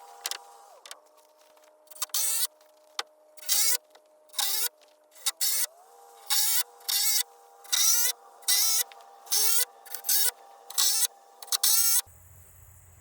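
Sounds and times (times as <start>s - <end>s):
power tool bursts: 4.4s - 12.0s.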